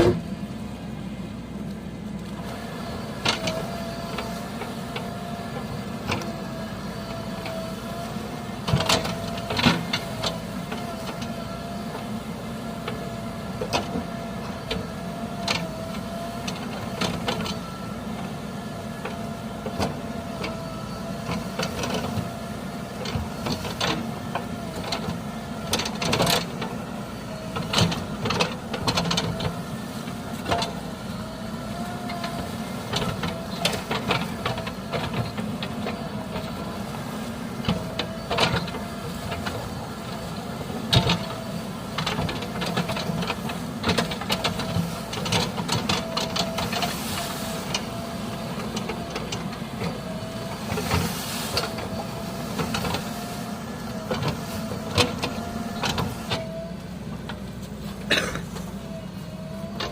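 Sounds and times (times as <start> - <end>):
heavy diesel engine whining: 0.0 - 59.9.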